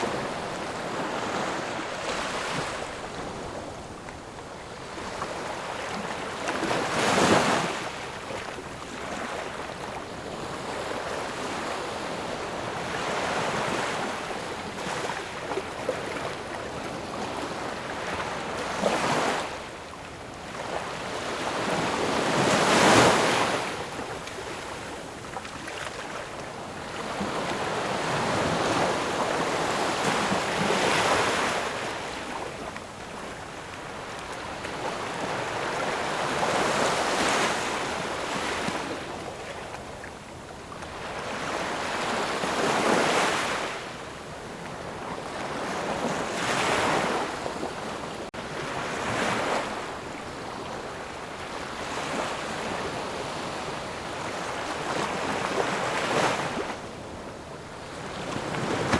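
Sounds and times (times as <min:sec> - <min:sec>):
ocean waves rolling in: 0:00.0 - 0:58.9.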